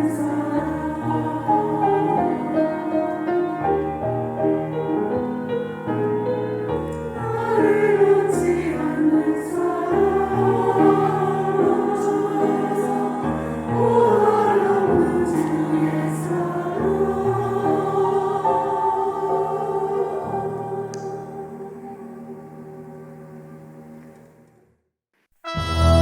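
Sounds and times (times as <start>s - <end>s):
choir singing: 0.0s - 24.0s
piano chords: 0.0s - 24.7s.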